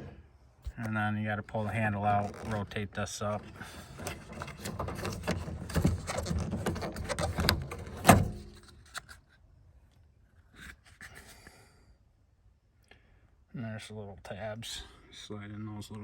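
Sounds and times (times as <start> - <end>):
plastic scraping and rattling: 0.6 - 9.4.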